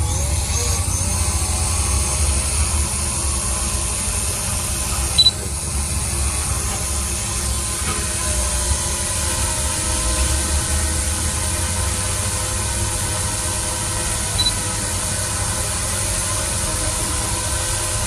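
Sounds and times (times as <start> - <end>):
diesel machinery rumbling: 0.0 - 18.0
brief high squeak: 5.2 - 5.4, 14.4 - 14.6.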